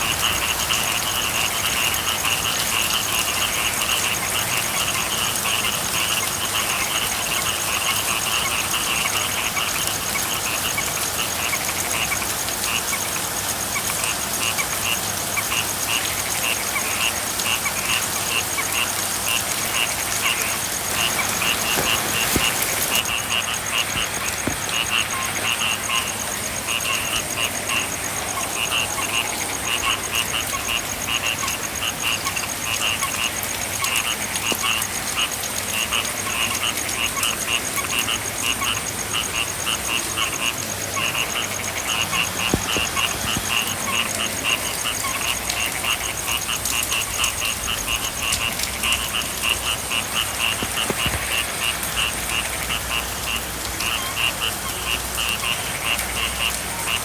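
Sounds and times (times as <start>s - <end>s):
frogs calling in trills: 0.0s - 57.0s
light rain hissing: 18.0s - 26.5s, 40.9s - 55.9s.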